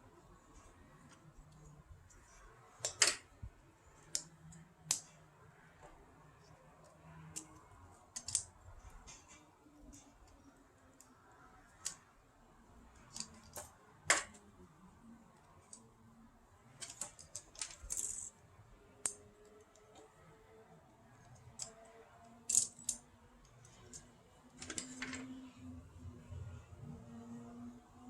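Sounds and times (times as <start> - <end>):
plastic and metal parts clicking: 0.6 - 3.4, 4.0 - 5.2, 6.4 - 11.1, 13.0 - 14.4, 16.7 - 18.4, 21.2 - 21.8, 22.4 - 25.3.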